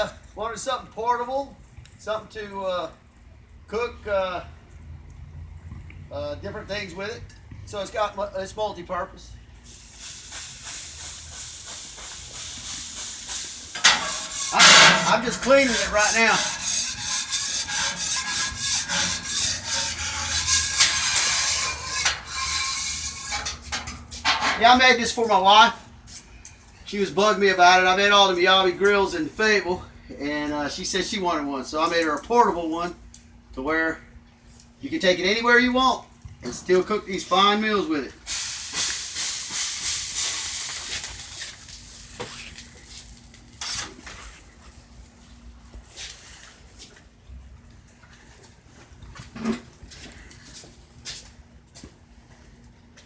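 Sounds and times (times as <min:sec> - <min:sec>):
sizzling hiss on hot griddle: 0:09.6 - 0:24.3, 0:38.2 - 0:43.3
scraping a flat-top grill: 0:09.7 - 0:24.9.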